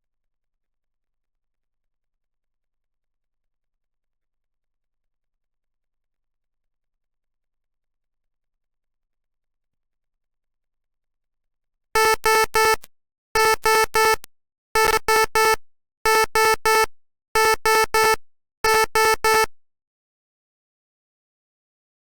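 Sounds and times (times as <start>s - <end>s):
buzzy electronic alarm beeps: 12.0s - 19.5s.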